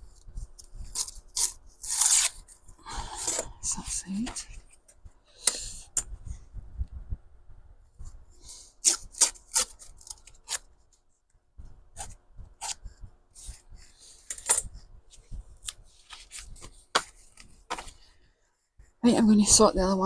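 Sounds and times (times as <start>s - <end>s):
paper pages rustling: 14.0s - 18.1s.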